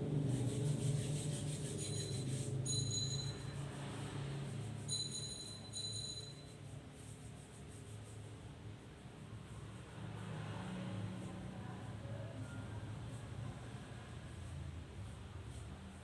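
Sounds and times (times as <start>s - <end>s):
hands rubbing together: 0.1s - 5.0s
short high squeaks: 1.7s - 3.6s.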